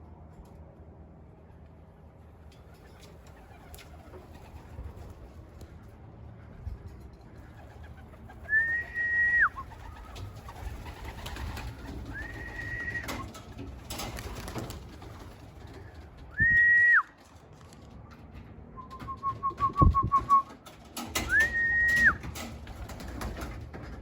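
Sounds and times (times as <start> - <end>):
pigeons cooing: 1.8 - 5.4, 7.2 - 16.4.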